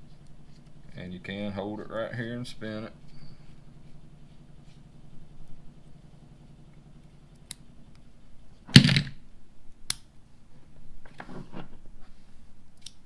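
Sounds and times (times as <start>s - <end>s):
soft rustle: 2.9s - 6.6s.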